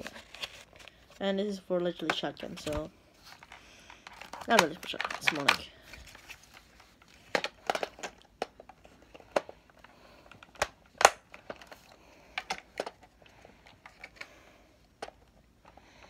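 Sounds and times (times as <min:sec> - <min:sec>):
plastic parts clicking: 0:02.1 - 0:14.3.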